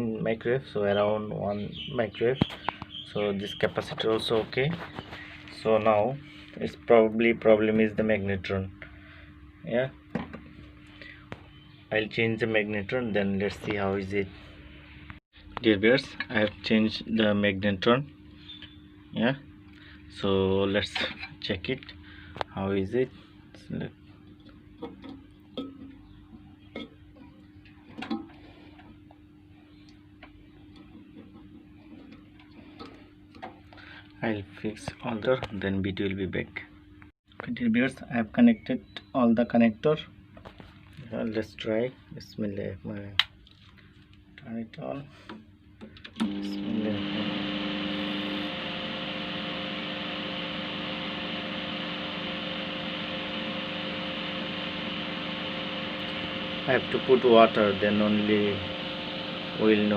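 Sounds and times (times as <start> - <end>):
faint steady hum: 4.4 - 35.3
microwave oven hum: 46.0 - 59.9.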